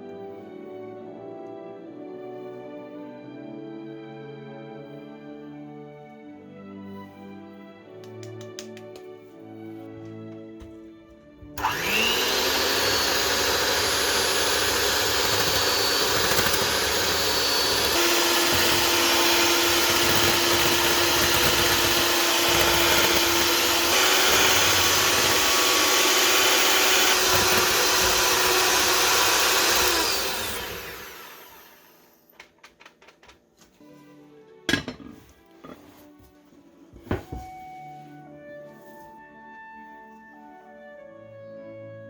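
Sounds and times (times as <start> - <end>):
electric mixer motor whining: 11.6 - 32.2.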